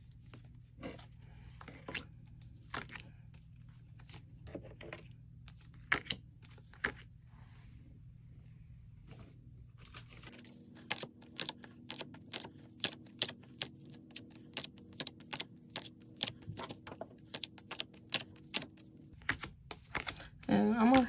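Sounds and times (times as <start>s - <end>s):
cards being flipped through: 5.5s - 7.1s, 9.8s - 21.0s.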